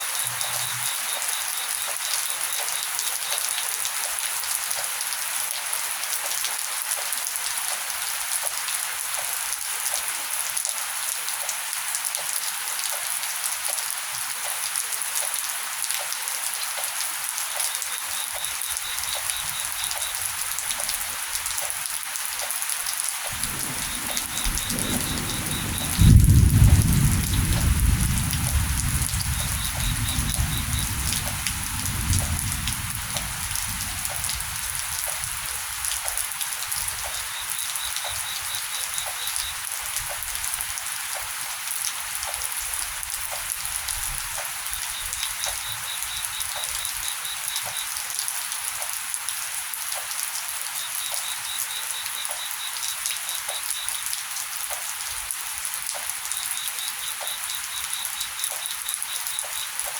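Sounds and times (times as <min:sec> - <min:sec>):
heavy rain pattering: 0:00.0 - 0:59.9
rapid ticking call: 0:17.6 - 0:20.9, 0:29.3 - 0:31.4, 0:44.9 - 0:48.0
thunder rumbling: 0:23.3 - 0:34.7.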